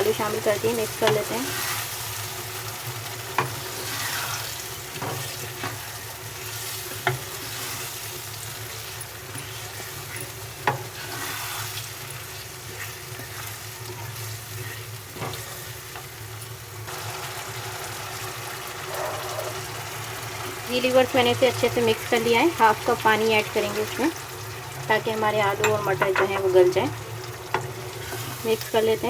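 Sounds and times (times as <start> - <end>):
vegetables sizzling in oil: 0.0 - 29.0
spoon stirring in pot: 25.5 - 26.6
spoon knocking against pot: 25.6 - 26.5.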